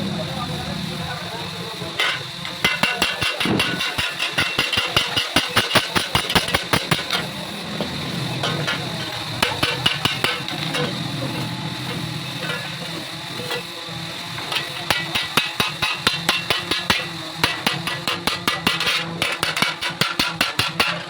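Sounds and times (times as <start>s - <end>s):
steady machine hum: 0.0s - 21.0s
hammer ringing on sheet metal: 2.0s - 7.3s, 8.4s - 10.9s, 14.4s - 21.0s.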